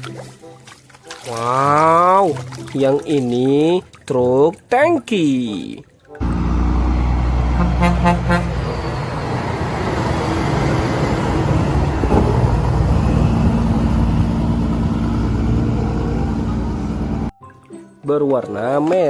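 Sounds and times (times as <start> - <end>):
truck horn toots: 6.2 - 9.6
truck engine running: 6.2 - 17.3.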